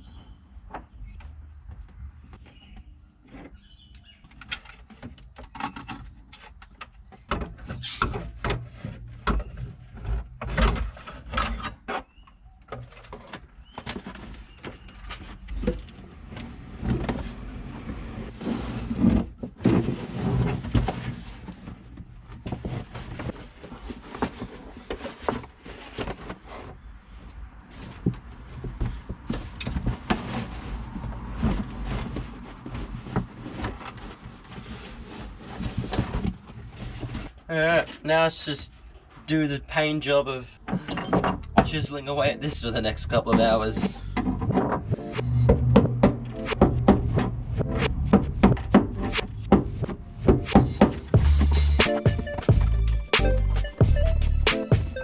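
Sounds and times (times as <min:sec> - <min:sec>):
knocks and clunks in a car: 0:43.3 - 0:51.3.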